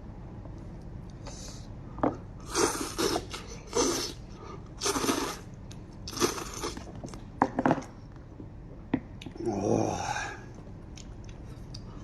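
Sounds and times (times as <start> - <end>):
mouth noises eating: 2.4 - 7.2.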